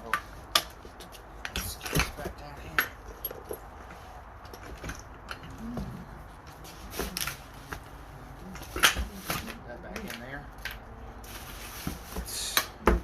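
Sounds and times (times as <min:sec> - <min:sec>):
bicycle parts clicking and knocking: 0:00.0 - 0:05.8, 0:08.5 - 0:11.0.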